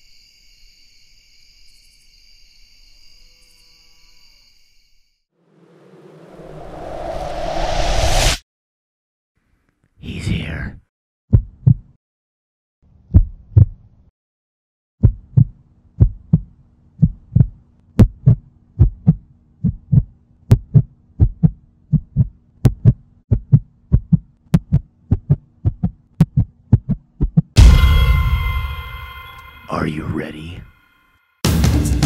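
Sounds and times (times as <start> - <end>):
heartbeat thumps: 11.3 - 11.9, 13.1 - 13.8, 15.0 - 28.6.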